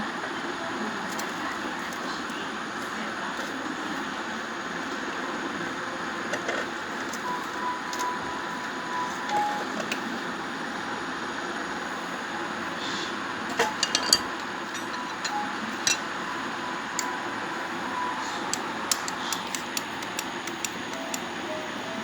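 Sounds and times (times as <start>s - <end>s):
faint whine: 0.4s - 22.0s
sharp clicks: 18.5s - 21.4s.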